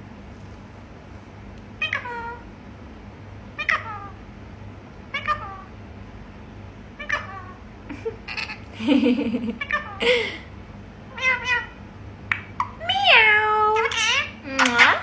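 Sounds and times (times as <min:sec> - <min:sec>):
parrot mimicking cat meows: 0:01.8 - 0:02.4, 0:03.6 - 0:04.2, 0:05.1 - 0:05.7, 0:07.0 - 0:07.6, 0:11.1 - 0:11.8, 0:12.8 - 0:15.0.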